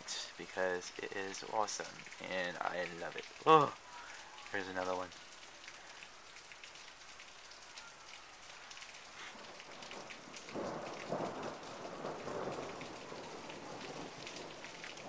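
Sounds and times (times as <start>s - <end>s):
steady rain falling: 0.0s - 15.0s
rumble of thunder: 9.4s - 15.0s.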